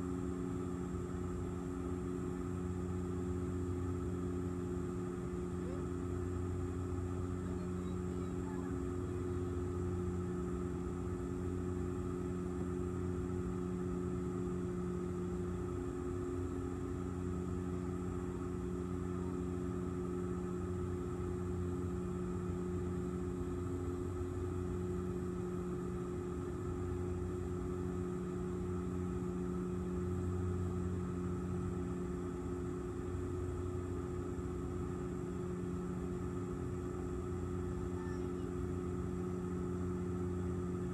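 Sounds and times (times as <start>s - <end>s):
aircraft engines droning: 0.0s - 40.9s.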